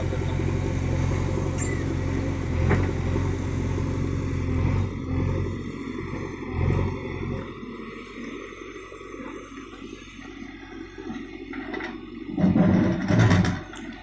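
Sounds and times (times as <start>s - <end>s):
diesel engine running: 0.0s - 14.0s.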